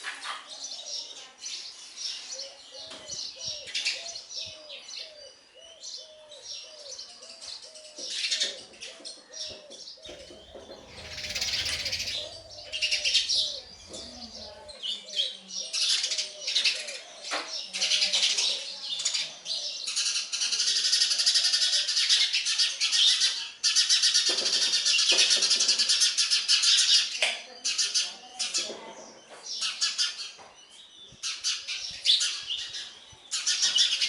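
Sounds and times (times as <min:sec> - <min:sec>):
low repeated bird call: 0:10.1 - 0:14.7
nestlings begging: 0:10.1 - 0:14.7
sparrows chirping: 0:10.1 - 0:15.0.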